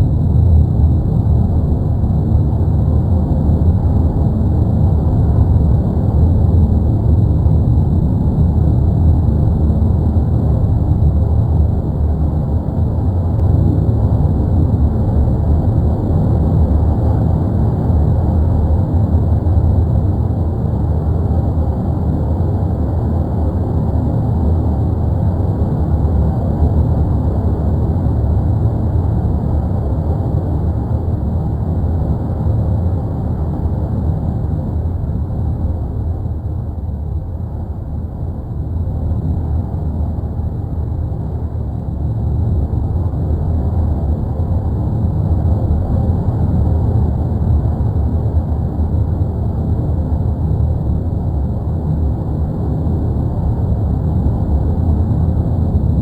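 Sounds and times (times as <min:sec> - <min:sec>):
volcanic eruption rumbling: 0:00.0 - 0:20.3.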